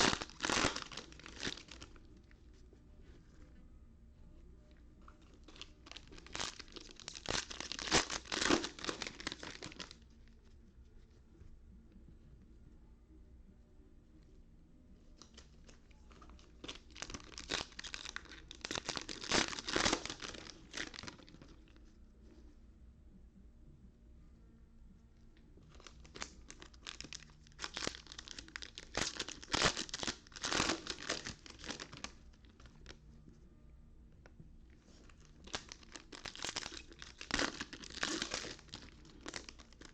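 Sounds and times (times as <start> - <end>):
foil wrappers tearing and crinkling: 0.0 - 1.9, 5.5 - 9.9, 16.6 - 21.4, 25.8 - 32.1, 35.4 - 39.9.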